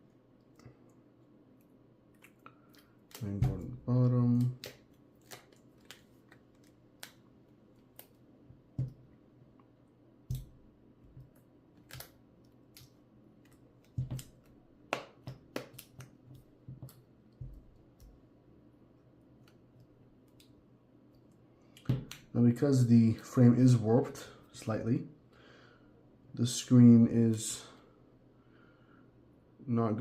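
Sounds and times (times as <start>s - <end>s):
small plastic clicks and taps: 10.3s - 18.2s.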